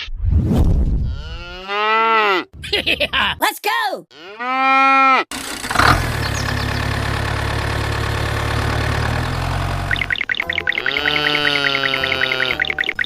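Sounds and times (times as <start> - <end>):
cow mooing: 1.1 - 2.5, 4.1 - 5.3, 10.8 - 12.8
engine starting and idling: 5.3 - 10.2.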